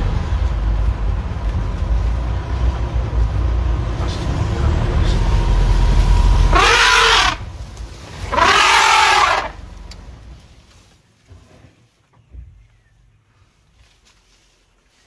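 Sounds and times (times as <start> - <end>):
vehicle engine rumble: 0.0 - 15.0
elephant trumpeting: 4.0 - 10.0.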